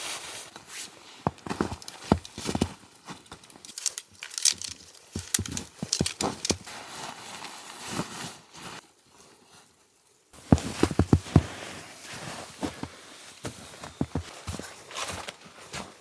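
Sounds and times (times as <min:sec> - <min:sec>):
camping gear knocking and rustling: 0:00.6 - 0:07.0, 0:10.4 - 0:15.9.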